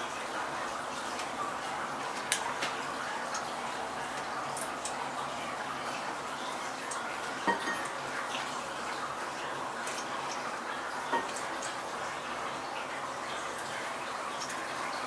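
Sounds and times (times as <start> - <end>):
utensils clinking on dishes: 7.4 - 7.9.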